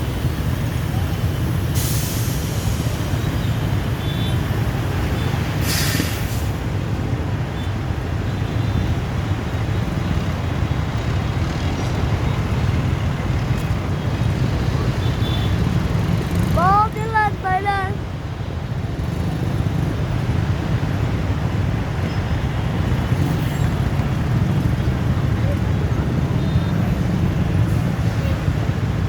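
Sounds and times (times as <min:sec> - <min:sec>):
short sharp hiss: 0:05.6 - 0:06.6.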